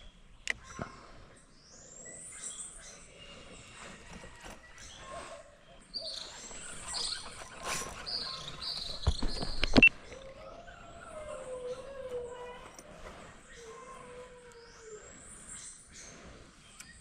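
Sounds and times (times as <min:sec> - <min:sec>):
birds whistling: 0:00.0 - 0:17.0
sharp clicks: 0:08.6 - 0:10.2.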